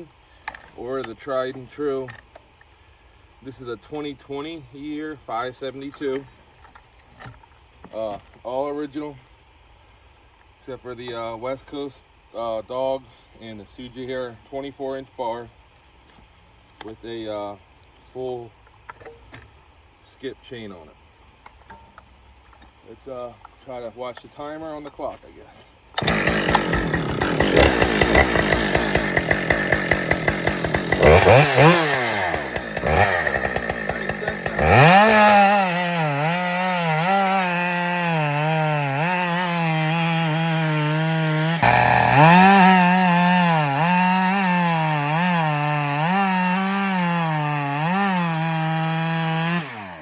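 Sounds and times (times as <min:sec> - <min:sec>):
chainsaw cutting through log: 0:26.0 - 0:50.0
chainsaw idling and revving: 0:26.0 - 0:50.0.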